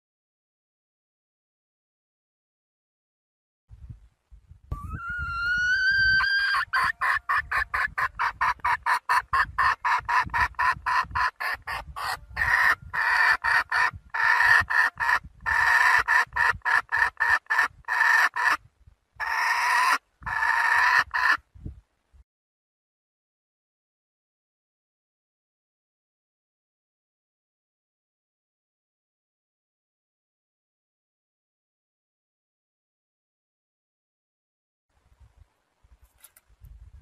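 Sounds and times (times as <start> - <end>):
junglefowl hen clucking: 4.7 - 18.6, 19.2 - 21.4.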